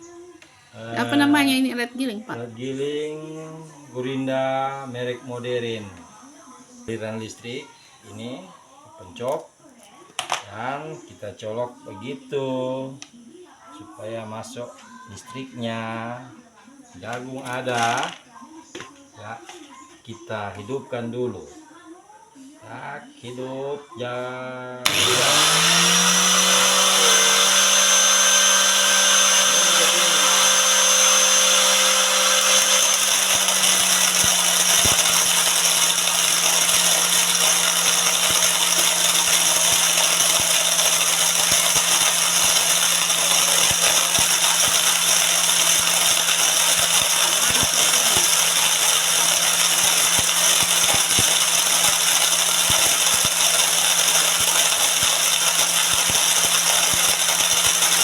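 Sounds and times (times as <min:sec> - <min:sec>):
corn kernels crackling in mill: 0:17.4 - 0:18.2, 0:24.8 - 0:58.0
electric motor humming: 0:24.8 - 0:58.0.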